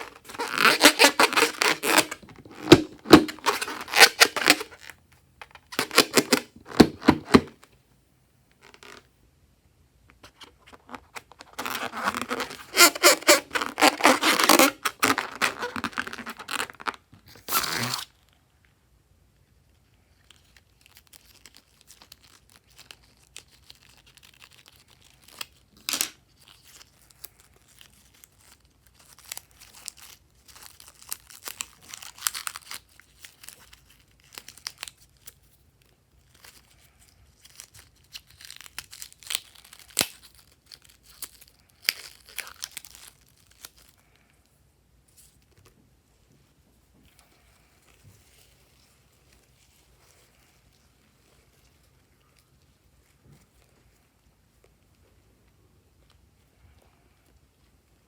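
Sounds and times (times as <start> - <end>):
slime crackling and popping: 36.3 - 43.9.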